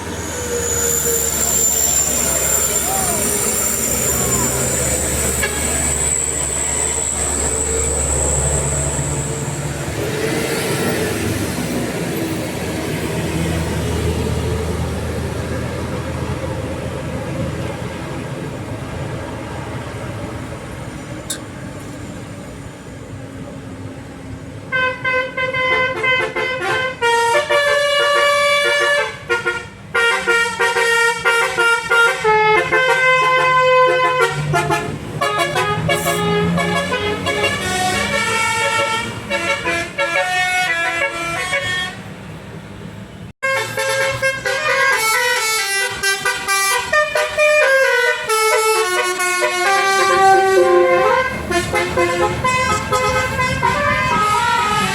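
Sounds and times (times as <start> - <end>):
vehicle engine and road noise: 0.0 - 54.9
musical air horn melody: 5.3 - 5.9, 24.7 - 42.0, 43.4 - 54.9.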